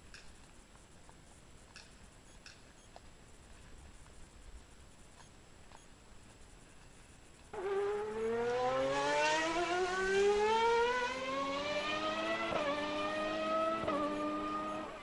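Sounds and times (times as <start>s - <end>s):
engine accelerating and shifting gears: 7.6s - 15.0s.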